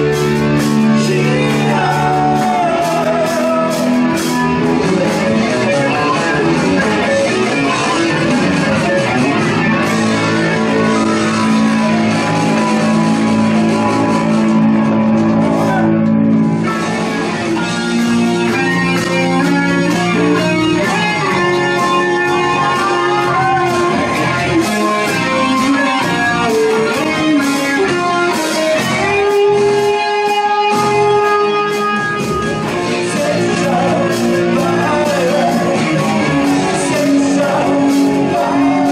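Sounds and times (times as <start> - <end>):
bass guitar: 0.0 - 38.9
drums: 0.0 - 38.9
electric guitar: 0.0 - 38.9.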